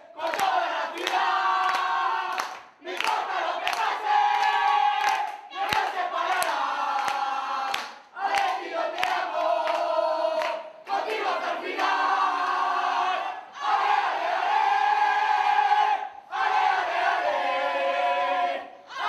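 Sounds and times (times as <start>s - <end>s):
rhythmic handclaps: 0.0s - 12.9s
crowd chanting in unison: 0.0s - 19.0s.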